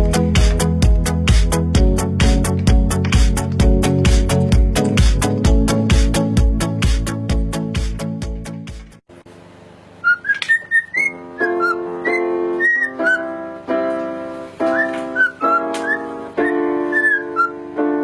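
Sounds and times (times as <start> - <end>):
repeated keyboard chords: 0.0 - 8.8, 11.1 - 18.0
whistled tune: 10.0 - 13.4, 14.6 - 17.7.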